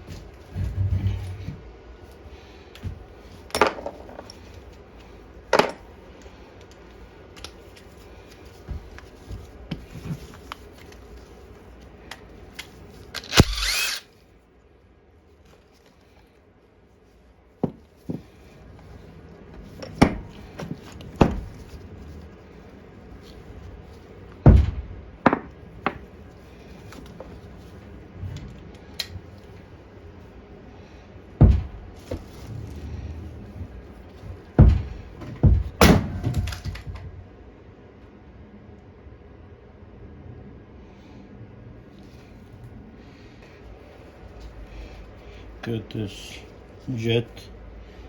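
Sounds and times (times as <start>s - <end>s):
metal parts clicking and knocking: 13.1s - 14.1s.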